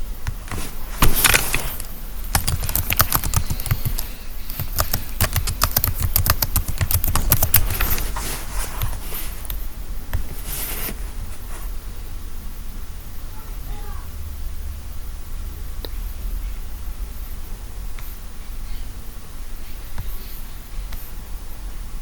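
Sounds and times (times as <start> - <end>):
typing on computer keyboard: 2.3 - 8.0.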